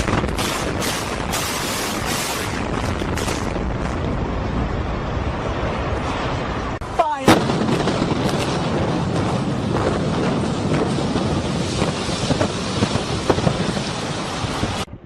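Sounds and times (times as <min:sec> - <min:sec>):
sharp blast bangs: 0:00.0 - 0:04.6, 0:07.2 - 0:13.8
heavy demolition rumble: 0:00.0 - 0:15.0.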